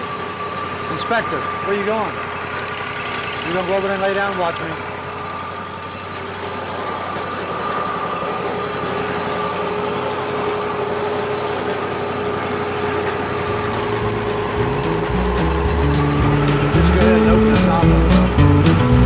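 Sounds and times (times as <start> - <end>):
band sawmill humming: 0.0 - 19.0.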